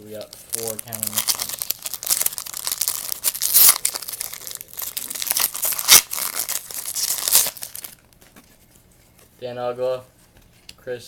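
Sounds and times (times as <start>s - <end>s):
wrapper being torn and crinkled: 0.0s - 8.0s.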